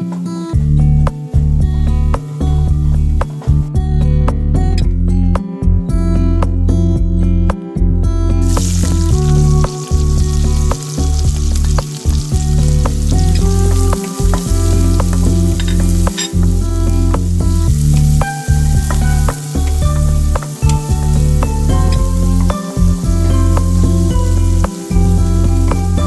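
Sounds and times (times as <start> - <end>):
background music with bass beat: 0.0 - 26.0
rice sizzling in a pan: 8.4 - 26.0.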